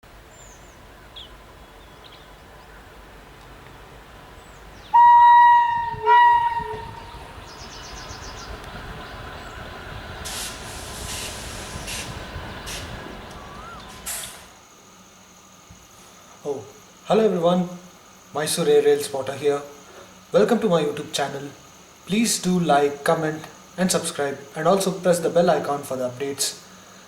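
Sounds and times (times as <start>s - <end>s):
train running: 2.4s - 14.7s
locomotive horn blasts: 4.9s - 7.5s.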